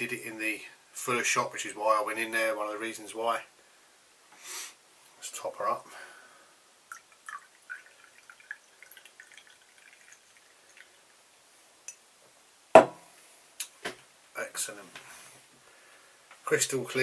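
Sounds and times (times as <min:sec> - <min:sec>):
beer pouring into a glass: 0:06.9 - 0:11.2
sharp knock: 0:12.8 - 0:13.0.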